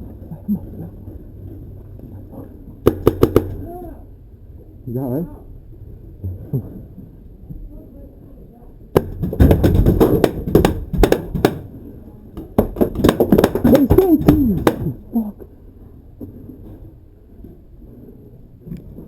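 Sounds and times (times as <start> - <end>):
paintball markers firing: 2.9 - 3.6, 9.0 - 11.7, 12.4 - 15.0
person shouting: 13.6 - 15.0.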